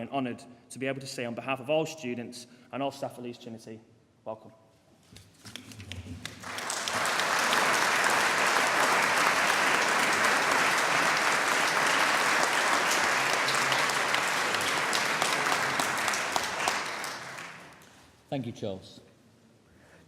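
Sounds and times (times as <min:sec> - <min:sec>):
audience applauding: 0:06.2 - 0:18.0.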